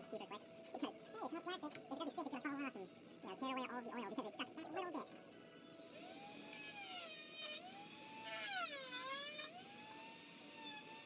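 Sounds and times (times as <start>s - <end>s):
rotary tool cutting plastic: 5.8s - 11.0s.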